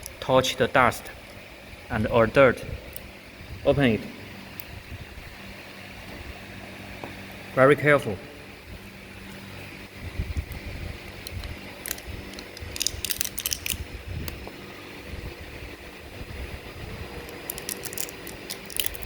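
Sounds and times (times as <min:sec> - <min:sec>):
small parts clicking and rattling: 0:11.2 - 0:14.4, 0:17.3 - 0:19.0.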